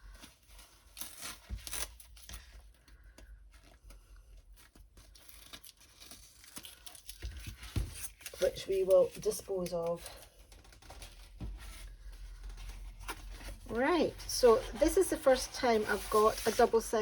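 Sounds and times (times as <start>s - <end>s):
plastic crinkling and crackling: 0.0s - 17.0s.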